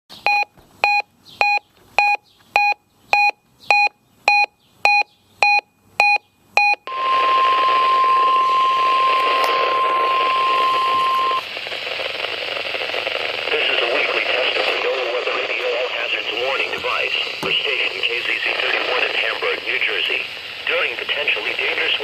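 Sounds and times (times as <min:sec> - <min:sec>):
short high electronic beeps: 0:00.3 - 0:11.4
steady warning alarm tone: 0:02.6 - 0:11.5
radio static: 0:06.9 - 0:22.0.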